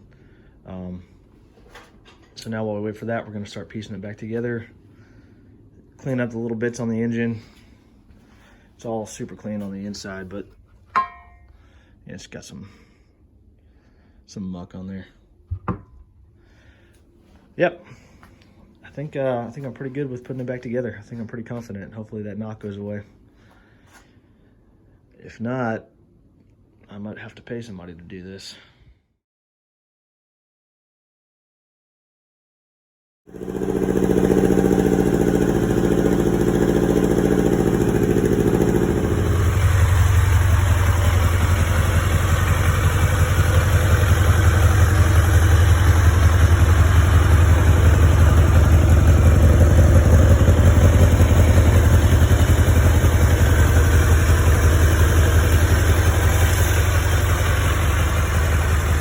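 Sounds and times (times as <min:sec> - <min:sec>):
motorcycle engine idling: 0:33.3 - 0:59.0.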